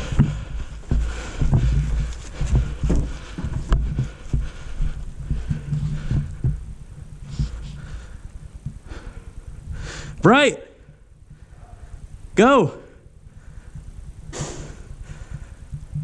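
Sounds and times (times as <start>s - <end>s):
rustling at microphone: 0.0s - 9.9s
low thumps on camera: 5.2s - 7.8s.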